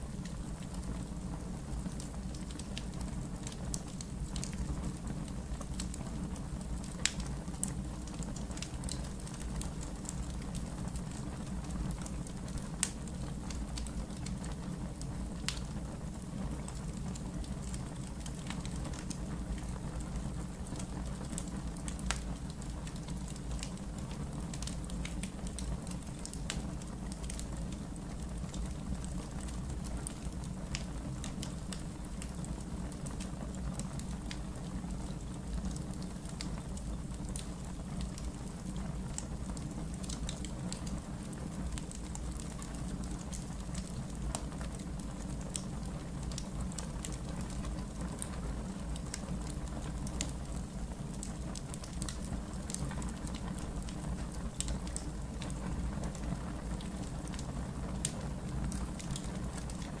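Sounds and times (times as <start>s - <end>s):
wood fire crackling: 0.0s - 60.0s.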